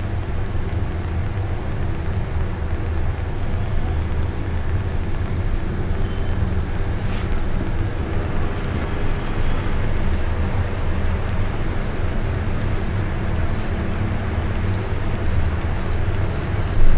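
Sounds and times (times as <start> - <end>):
air conditioner humming: 5.3 - 16.9.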